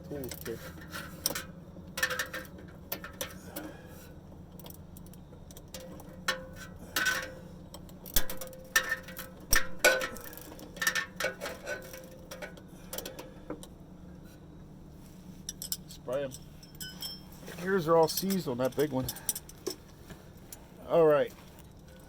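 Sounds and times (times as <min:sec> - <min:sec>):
ratcheting wrenches clicking: 0:04.5 - 0:13.7.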